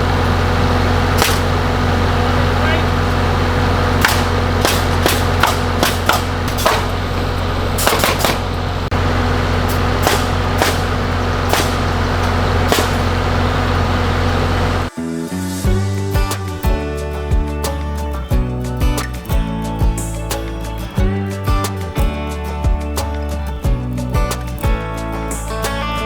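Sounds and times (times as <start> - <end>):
engine humming: 0.0 - 26.0
nails being driven cracks: 1.2 - 1.6, 4.0 - 8.6, 9.7 - 13.2.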